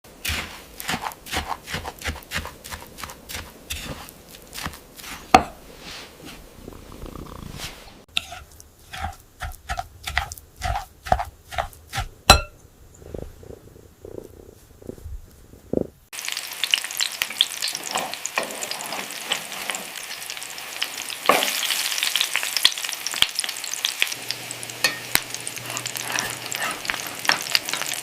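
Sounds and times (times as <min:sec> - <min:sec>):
kitchen clicking and tapping: 0:08.2 - 0:12.6
metallic clink: 0:12.3 - 0:12.6.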